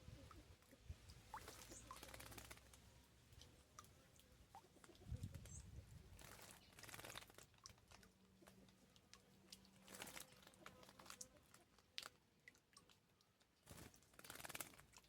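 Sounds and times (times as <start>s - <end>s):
faint bird chirps: 0.0s - 2.6s
wings fluttering and water splashing: 0.0s - 15.0s.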